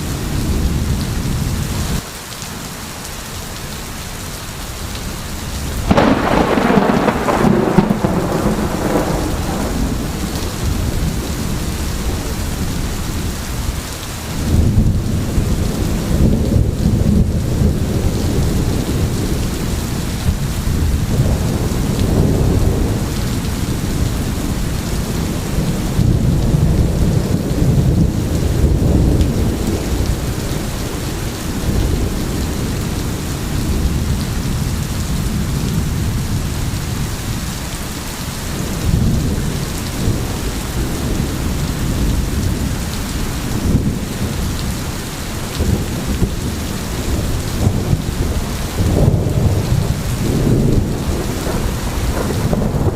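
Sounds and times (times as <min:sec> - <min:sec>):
heavy rain: 0:00.0 - 0:52.9.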